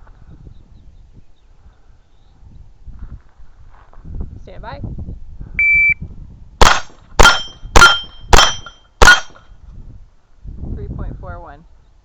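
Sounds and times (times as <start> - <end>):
shot timer beep: 5.6 - 6.0
rifle shots: 6.6 - 9.4
bullets ringing on steel target: 6.6 - 9.5.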